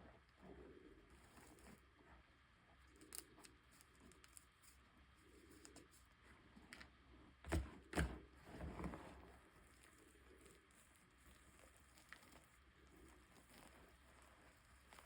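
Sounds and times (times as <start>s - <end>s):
chalk crackling and clicking: 2.9s - 6.1s.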